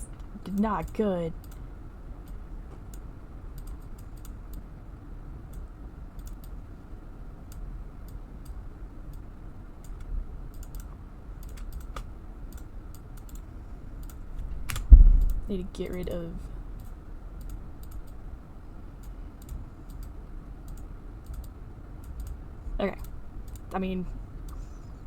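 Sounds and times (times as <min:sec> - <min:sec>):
keyboard and mouse clicks: 0:00.0 - 0:01.6, 0:02.2 - 0:04.6, 0:05.5 - 0:06.6, 0:07.5 - 0:16.2, 0:16.8 - 0:18.2, 0:19.0 - 0:22.4, 0:23.0 - 0:23.7
faint low hum: 0:00.0 - 0:25.0.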